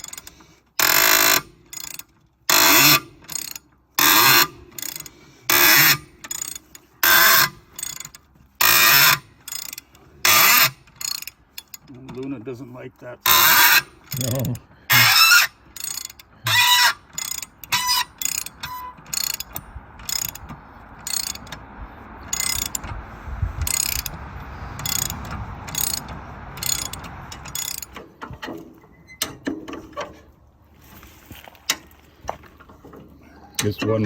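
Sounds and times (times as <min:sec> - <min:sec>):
ratchet clicking: 0:00.0 - 0:11.9, 0:13.3 - 0:21.6, 0:22.2 - 0:23.0, 0:23.6 - 0:28.5
low rumble: 0:19.5 - 0:28.0.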